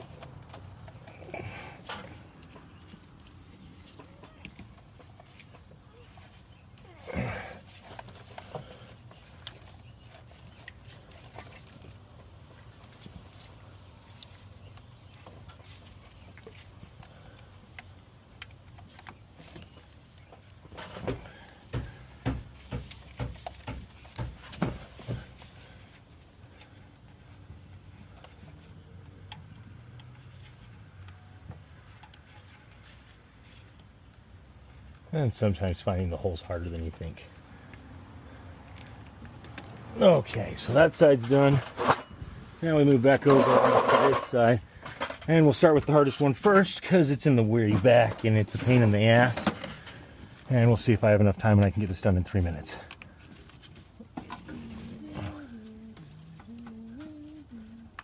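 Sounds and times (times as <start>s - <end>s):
hands clicking on engine parts: 0.0s - 32.2s, 37.4s - 40.4s
low steady hum: 0.0s - 58.0s.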